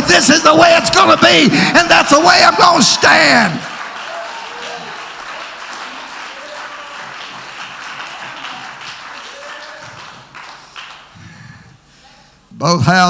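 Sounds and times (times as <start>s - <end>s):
congregation applauding: 0.0s - 11.6s
voices calling out: 2.1s - 10.6s.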